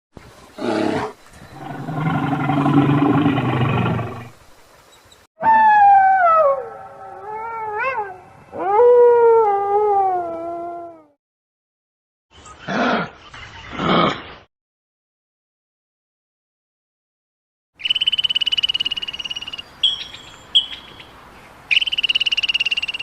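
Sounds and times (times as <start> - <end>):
low rough animal call: 0.6 - 4.3
high wavering animal calls: 5.4 - 8.9.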